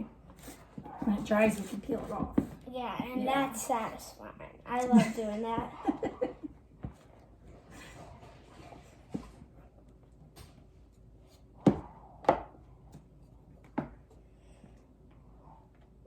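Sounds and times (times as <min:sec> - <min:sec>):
utensil stirring thick slime: 0:00.1 - 0:03.6.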